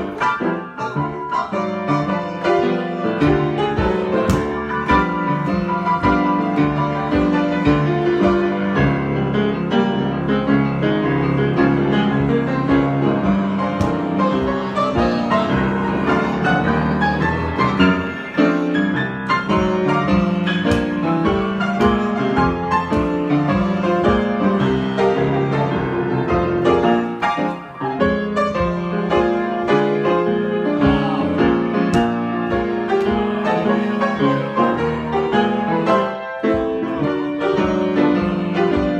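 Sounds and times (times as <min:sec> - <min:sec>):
piano improvisation: 0:00.0 - 0:38.9.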